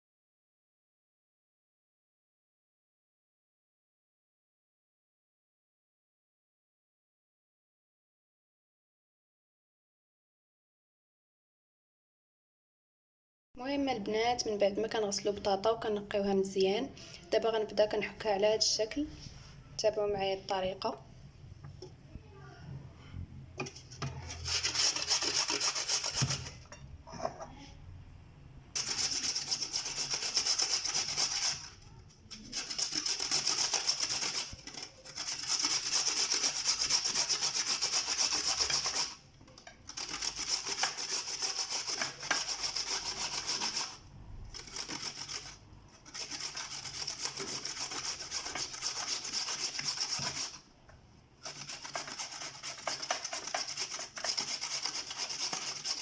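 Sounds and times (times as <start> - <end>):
potatoes grated on metal grater: 23.6 - 26.6, 28.8 - 39.2, 39.9 - 50.6, 51.4 - 56.0.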